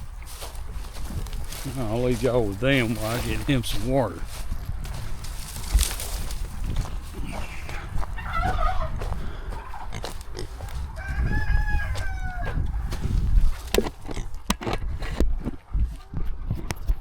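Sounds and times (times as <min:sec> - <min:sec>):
steady low rumble: 0:00.0 - 0:17.0
rooster crowing: 0:07.7 - 0:09.9, 0:10.5 - 0:13.0.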